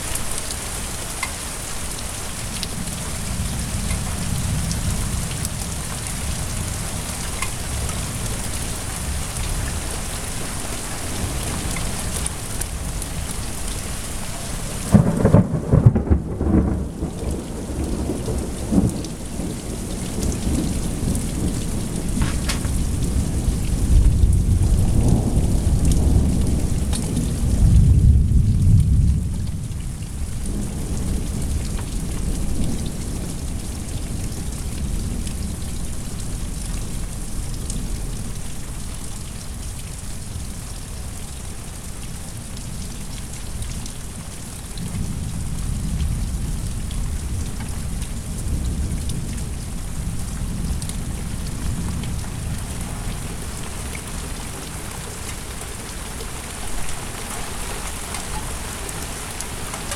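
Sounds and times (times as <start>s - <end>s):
steady rain falling: 0.0s - 59.9s
thunder rumbling: 2.6s - 36.4s.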